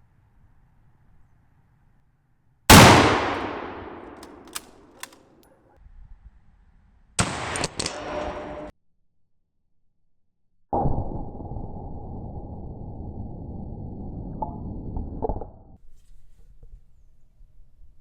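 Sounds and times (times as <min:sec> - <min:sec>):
rifle shot hitting steel: 0:02.7 - 0:05.1, 0:07.2 - 0:08.7
sharp clicks: 0:02.7 - 0:05.2, 0:07.2 - 0:08.5.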